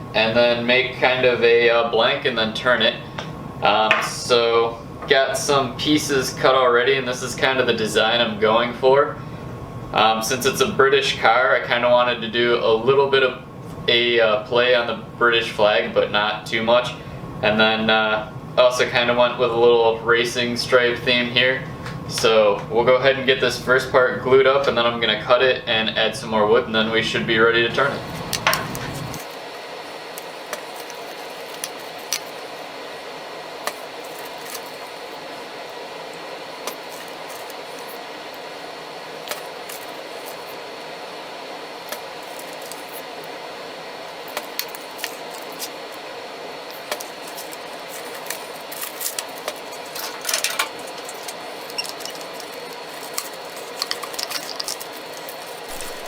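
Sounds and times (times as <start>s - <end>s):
faint hum tones: 0.0s - 56.0s
wood strips and tools clicking: 28.0s - 29.4s, 46.7s - 56.0s.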